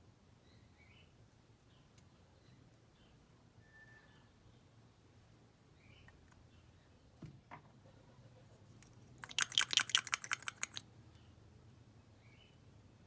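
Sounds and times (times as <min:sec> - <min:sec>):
slime squeezed by hand: 0:09.2 - 0:10.8
sticky crackling pops: 0:09.2 - 0:10.8.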